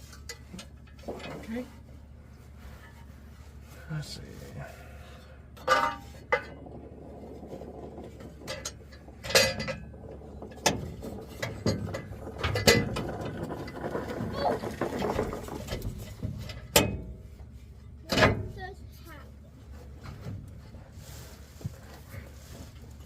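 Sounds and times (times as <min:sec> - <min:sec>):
sharp clicks and knocks: 0:05.6 - 0:17.2.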